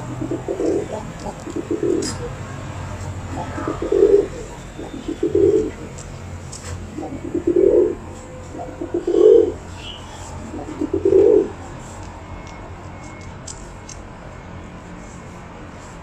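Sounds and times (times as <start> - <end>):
pigeon cooing: 0.0 - 6.1, 6.7 - 11.8.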